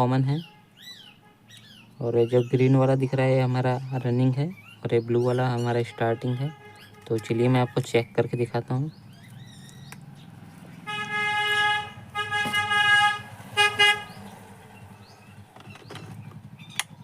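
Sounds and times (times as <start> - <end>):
vehicle horn honking: 5.9 - 7.8, 10.8 - 14.2.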